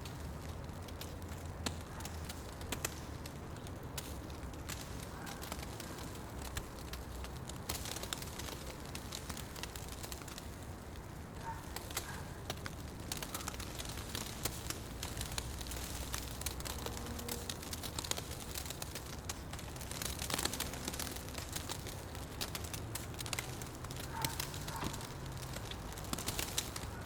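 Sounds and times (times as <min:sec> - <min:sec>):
fire crackling and popping: 0:00.0 - 0:27.0
low fire rumble: 0:00.0 - 0:27.0.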